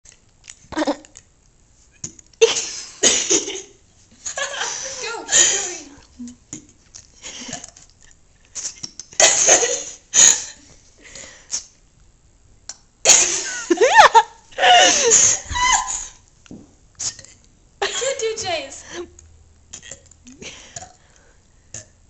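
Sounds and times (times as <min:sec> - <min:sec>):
people laughing and shrieking: 0:13.8 - 0:16.1.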